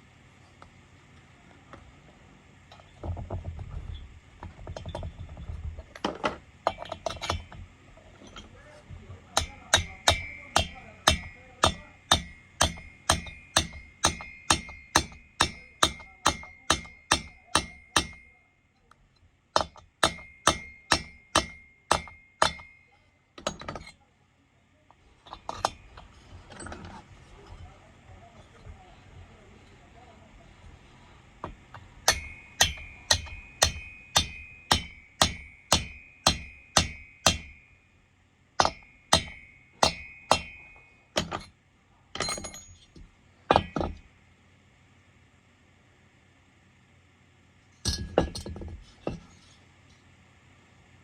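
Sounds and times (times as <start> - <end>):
hammer striking metal tool: 6.6 - 7.6, 9.4 - 18.4, 19.6 - 24.0, 25.2 - 27.0, 31.4 - 37.9, 38.6 - 41.5, 42.2 - 44.1, 47.9 - 49.3.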